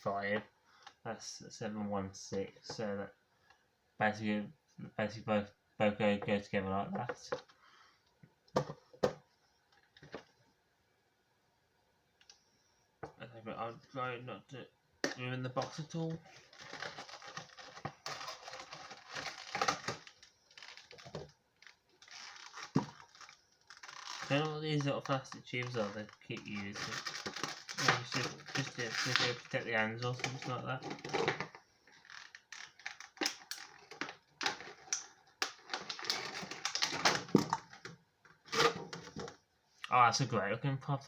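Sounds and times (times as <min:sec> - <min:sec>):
cardboard box and plastic packaging handled: 0:15.6 - 0:39.4.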